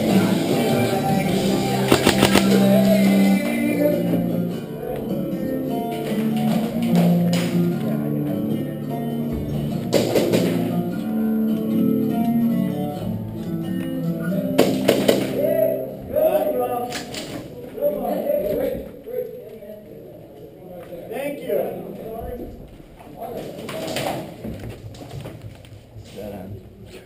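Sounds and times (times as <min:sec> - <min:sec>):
sharp clicks: 0:01.9 - 0:02.7.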